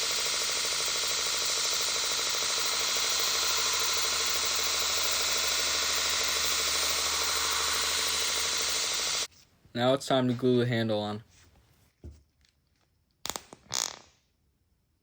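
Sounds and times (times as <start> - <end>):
power tool whirring: 0.0 - 9.3.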